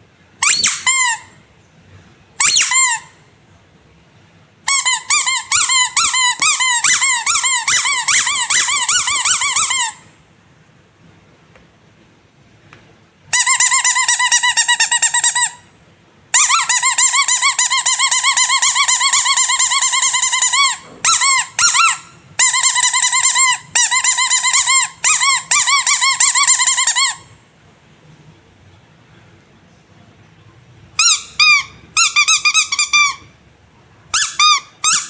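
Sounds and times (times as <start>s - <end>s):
squeaky rubber toy squeaking: 0.4s - 1.4s, 2.4s - 3.3s, 4.6s - 10.2s, 13.3s - 15.7s, 16.3s - 27.4s, 30.9s - 33.4s, 34.1s - 35.0s.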